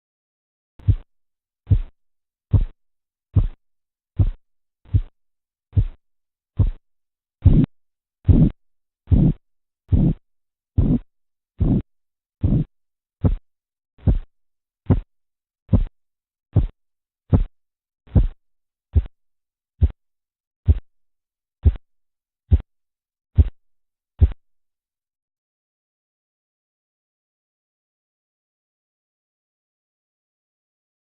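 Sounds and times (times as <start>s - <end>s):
pulse beats through stethoscope: 0.8s - 1.9s, 2.5s - 3.6s, 4.2s - 6.0s, 6.6s - 6.8s, 7.4s - 10.2s, 10.8s - 13.4s, 14.0s - 14.3s, 14.9s - 15.1s, 15.7s - 15.9s, 16.5s - 17.5s, 18.1s - 19.2s, 19.8s - 20.0s, 20.7s - 20.9s, 21.6s - 21.9s, 23.4s - 23.6s, 24.2s - 24.4s.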